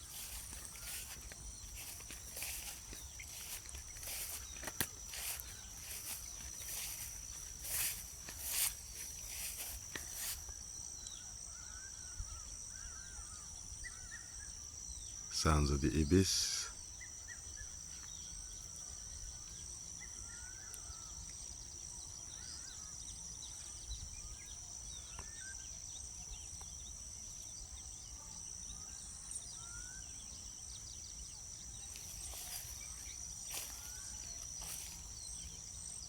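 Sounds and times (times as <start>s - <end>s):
brief rustling: 0.0s - 10.4s
high-pitched insect drone: 0.0s - 13.4s, 30.8s - 36.0s
faint bird chirps: 0.0s - 36.0s.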